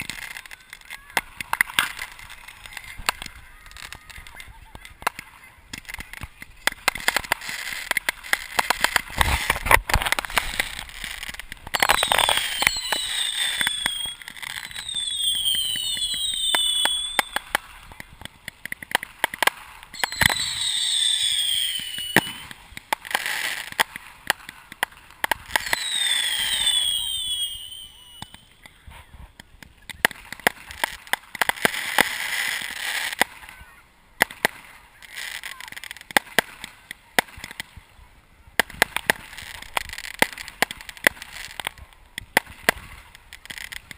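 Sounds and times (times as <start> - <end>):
fireworks hissing: 0.0 - 37.9, 38.6 - 43.9
fireworks bangs and crackles: 0.0 - 43.9
shrill falling whistles: 11.8 - 17.5, 20.0 - 22.5, 25.6 - 28.6.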